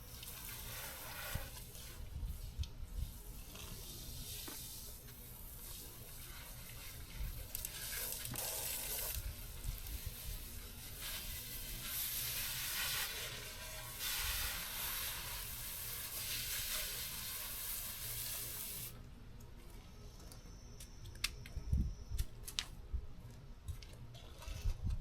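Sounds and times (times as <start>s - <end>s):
spraying water hiss: 0.0s - 19.0s.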